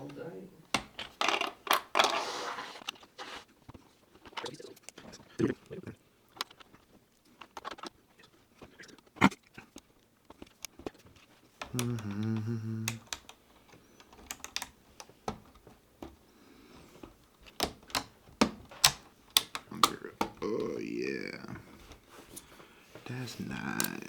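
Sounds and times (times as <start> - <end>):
plastic bricks clicking and rattling: 0.8 - 2.2.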